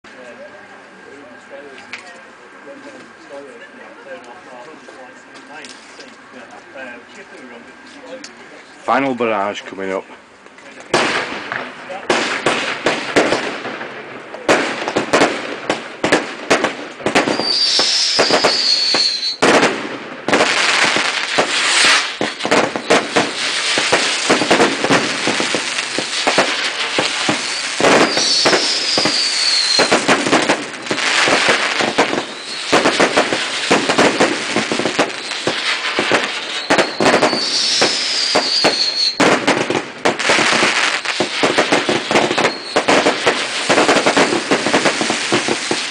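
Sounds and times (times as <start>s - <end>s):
fireworks bangs and crackling: 8.9s - 45.9s
falling firework whistle: 17.1s - 45.9s.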